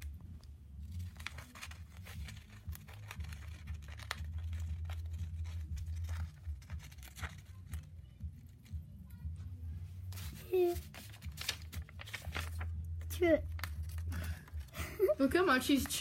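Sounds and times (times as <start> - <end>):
bird chewing paper: 0.8 - 8.7, 13.4 - 14.8.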